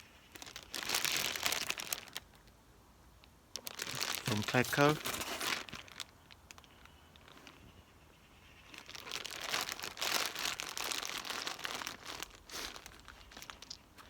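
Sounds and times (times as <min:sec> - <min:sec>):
plastic packet rustling: 0:00.3 - 0:02.3, 0:03.6 - 0:07.4, 0:08.7 - 0:13.8.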